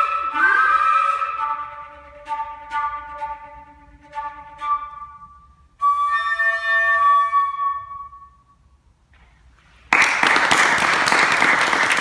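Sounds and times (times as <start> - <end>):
flute holding a note: 0.0 - 8.6
audience applause: 9.9 - 12.0.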